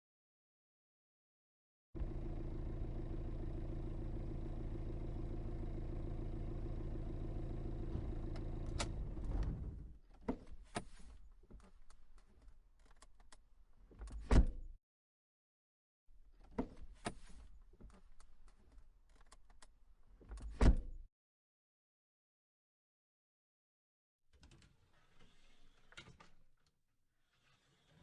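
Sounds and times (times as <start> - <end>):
car engine running: 2.0 - 10.0
car door slamming: 7.8 - 9.9.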